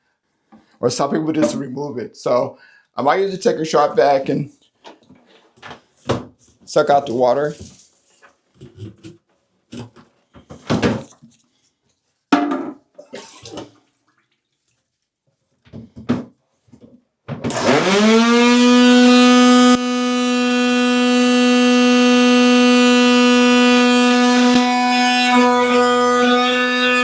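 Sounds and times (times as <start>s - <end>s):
shop vac motor whining: 17.5s - 27.0s.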